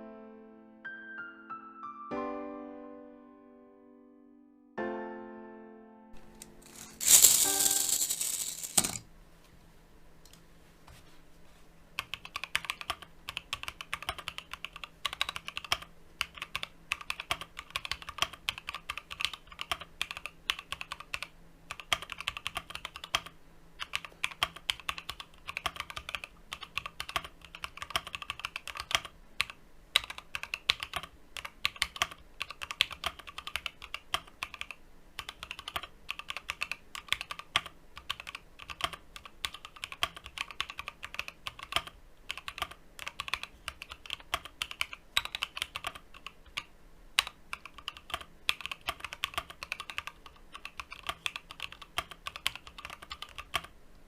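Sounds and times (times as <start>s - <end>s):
mechanical keyboard typing: 6.2s - 9.0s, 12.0s - 53.7s.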